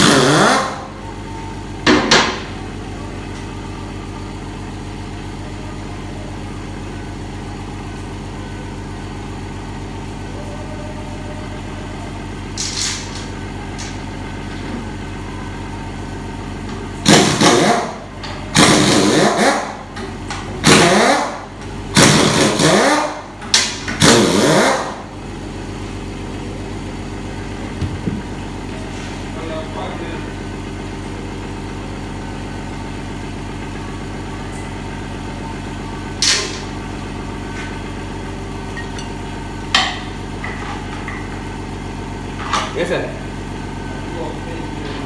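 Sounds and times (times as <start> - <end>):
steady mechanical drone: 0.0 - 45.0
pneumatic impact wrench bursts: 17.0 - 19.7, 22.0 - 23.2.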